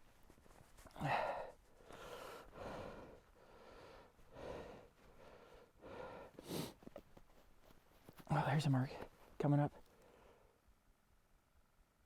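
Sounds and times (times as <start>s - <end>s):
person breathing heavily: 0.8s - 6.9s
sniffs: 6.2s - 7.0s.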